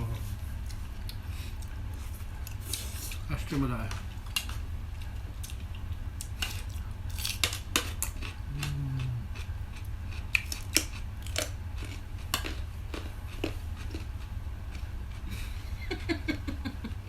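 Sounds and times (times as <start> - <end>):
person humming: 8.5 - 9.4.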